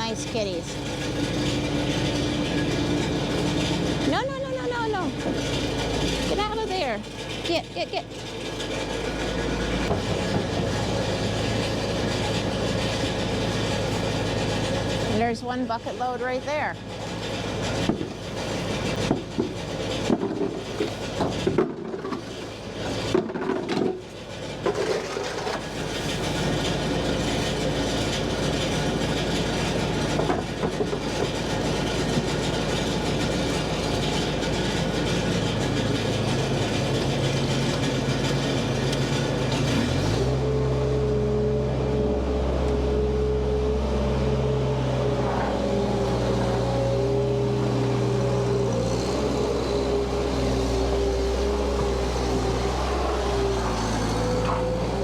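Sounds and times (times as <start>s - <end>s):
skid steer engine running: 0.0s - 55.0s
bucket knocks and scrapes: 19.0s - 22.4s, 23.0s - 24.0s.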